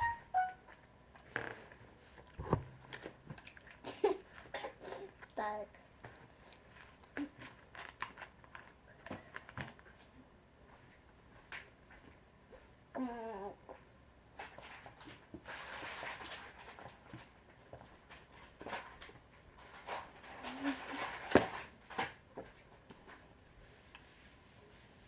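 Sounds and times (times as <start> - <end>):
mouth noises while eating: 0.7 - 10.2
rustling: 14.4 - 25.0.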